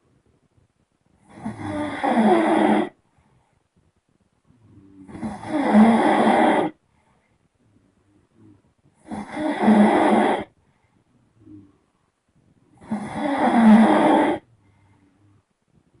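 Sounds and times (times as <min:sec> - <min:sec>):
person snoring: 0:01.2 - 0:03.0, 0:04.7 - 0:06.8, 0:09.0 - 0:10.5, 0:12.8 - 0:15.2.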